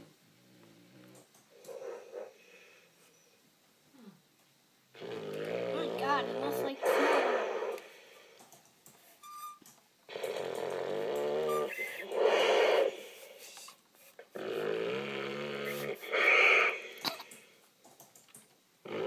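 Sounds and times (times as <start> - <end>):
dog snoring: 5.0 - 8.0, 10.1 - 13.2, 14.3 - 17.1.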